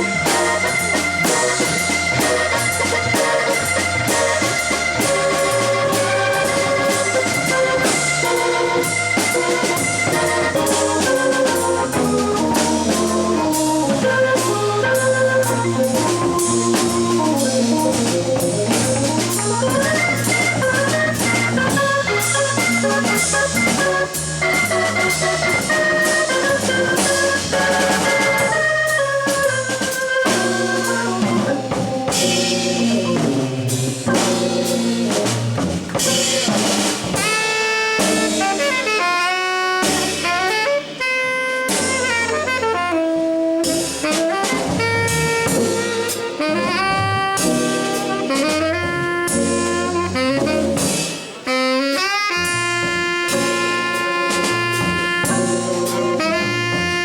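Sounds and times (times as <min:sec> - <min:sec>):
drum kit: 0:00.0 - 0:57.0
jazz organ: 0:00.0 - 0:57.0
tenor saxophone improvising: 0:37.2 - 0:57.0.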